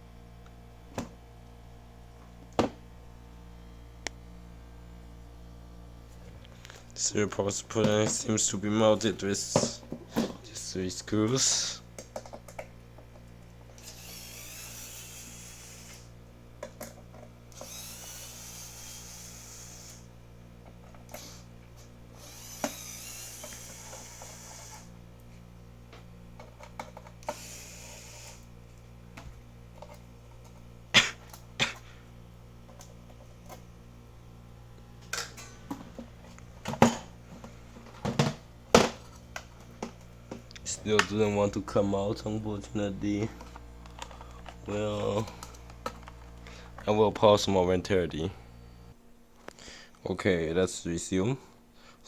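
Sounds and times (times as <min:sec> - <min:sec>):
steady low hum: 0:00.0 - 0:52.0
electric screwdriver running: 0:13.8 - 0:16.1, 0:17.5 - 0:20.1, 0:21.1 - 0:21.5, 0:22.2 - 0:24.9, 0:27.2 - 0:28.5.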